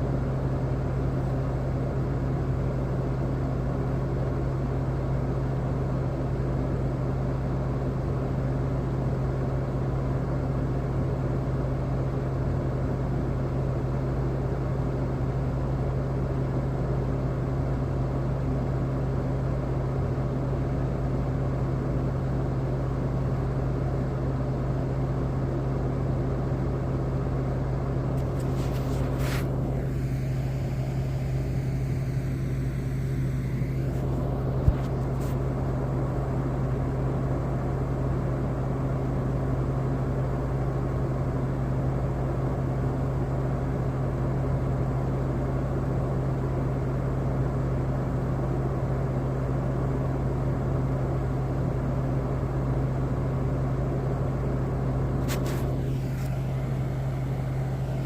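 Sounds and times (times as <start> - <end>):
machine droning: 27.8 - 37.2, 55.0 - 58.0
brief high hissing: 28.2 - 35.2, 55.2 - 58.0.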